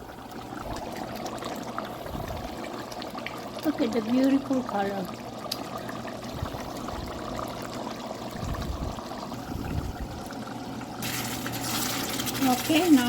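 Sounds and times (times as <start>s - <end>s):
sauce bubbling in a pan: 0.0s - 13.0s.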